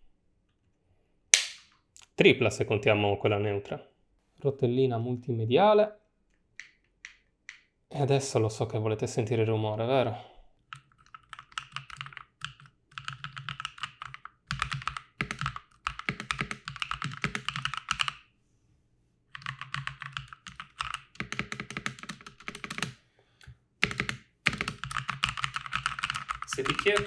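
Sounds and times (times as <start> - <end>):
keyboard typing dull clacking: 10.7 - 18.2, 19.4 - 23.0, 23.8 - 27.0.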